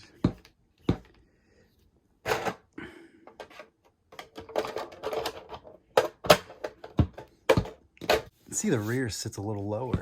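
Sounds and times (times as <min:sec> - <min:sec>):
plastic clicks and clatters: 0:03.3 - 0:08.3.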